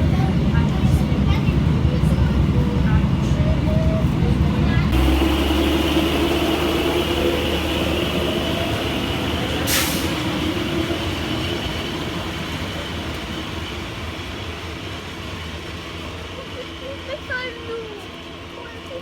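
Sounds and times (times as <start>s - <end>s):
train mechanical hum: 0.0s - 19.0s
short hiss: 9.7s - 10.2s.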